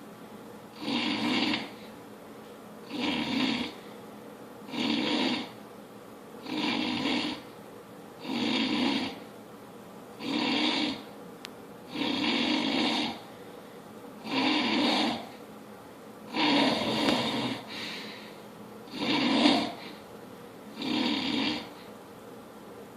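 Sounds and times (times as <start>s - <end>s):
man snoring loudly: 0.7s - 1.8s, 2.8s - 3.8s, 4.7s - 5.6s, 6.4s - 7.5s, 8.2s - 9.2s, 10.2s - 11.1s, 11.9s - 13.2s, 14.2s - 15.3s, 16.3s - 17.9s, 18.9s - 20.0s, 20.8s - 21.8s.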